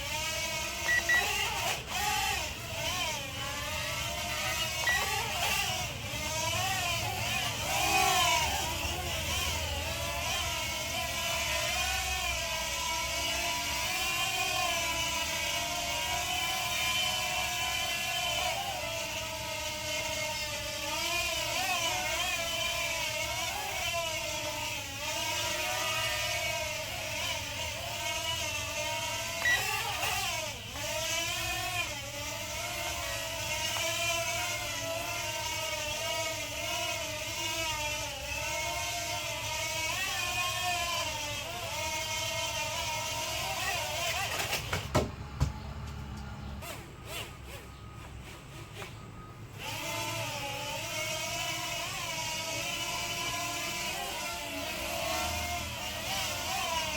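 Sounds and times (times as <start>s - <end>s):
quadcopter motors whining: 0.0s - 56.9s.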